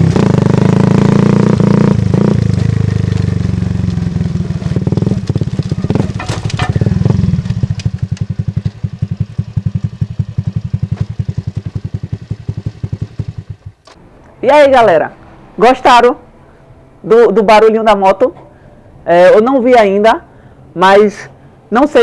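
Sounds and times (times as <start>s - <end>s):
motorcycle exhaust idling: 0.0s - 13.8s
clicks and rattles: 5.5s - 8.3s.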